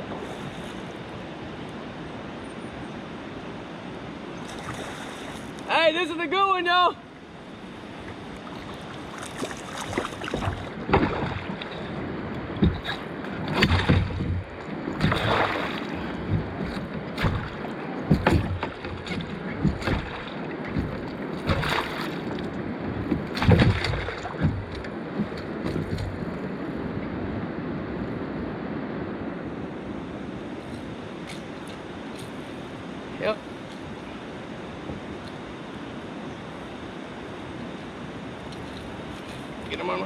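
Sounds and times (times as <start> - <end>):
steady wash of water: 0.0 - 40.0
water splashing: 4.4 - 5.7, 7.0 - 26.6.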